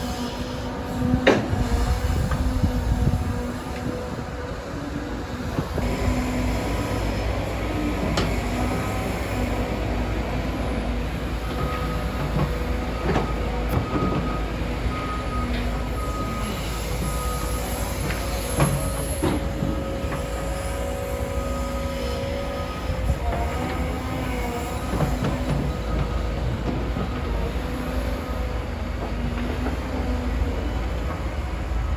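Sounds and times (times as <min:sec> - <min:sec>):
hydraulic whine: 0:00.0 - 0:31.9
diesel engine rumble: 0:00.4 - 0:31.9.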